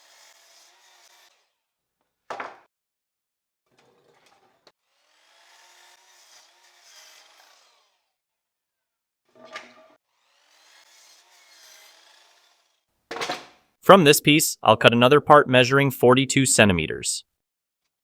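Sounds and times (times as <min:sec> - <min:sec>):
power saw cutting wood: 0:00.0 - 0:01.7, 0:04.1 - 0:08.2, 0:09.9 - 0:12.9.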